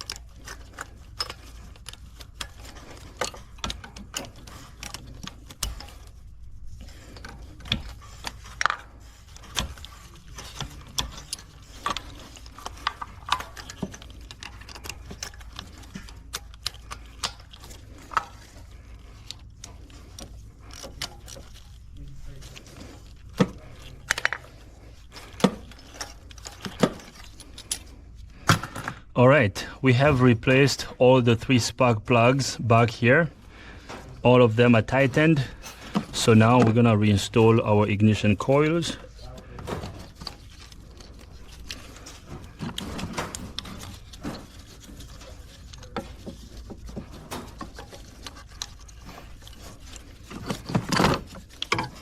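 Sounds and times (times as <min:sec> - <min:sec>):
metal tools clinking: 0:00.0 - 0:28.9.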